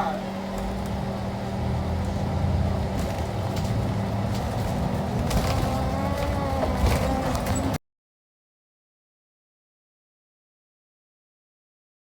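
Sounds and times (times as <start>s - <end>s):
vehicle engines rumbling: 0.0s - 7.8s.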